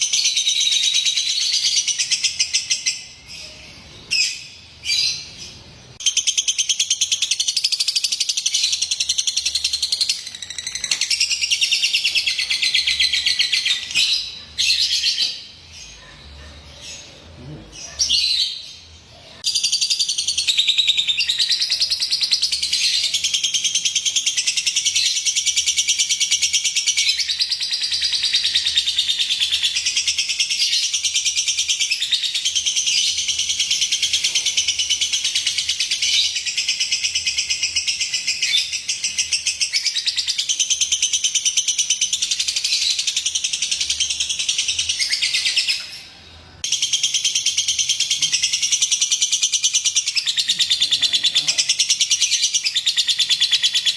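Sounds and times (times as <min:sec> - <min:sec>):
bird chattering chirps: 0:46.6 - 0:53.9.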